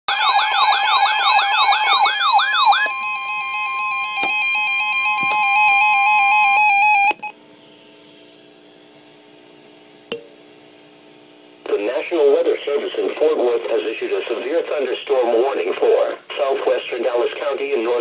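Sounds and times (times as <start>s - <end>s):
rapid warbling siren tone: 0.1s - 7.3s
faint hum: 0.2s - 18.0s
two-tone attention signal: 1.9s - 7.4s.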